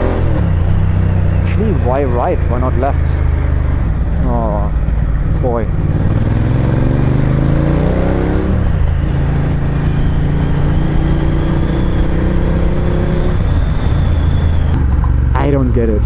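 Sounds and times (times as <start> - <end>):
motorcycle engine accelerating: 0.0 - 16.0.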